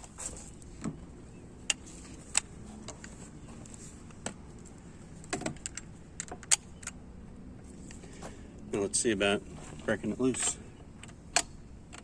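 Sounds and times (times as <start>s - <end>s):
tools clicking and knocking: 5.3s - 7.0s, 10.3s - 12.0s.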